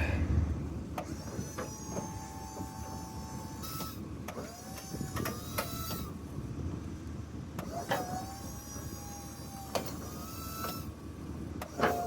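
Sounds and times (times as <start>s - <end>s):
hydraulic pump motor whining: 0.9s - 6.2s, 7.5s - 11.0s, 11.6s - 12.0s.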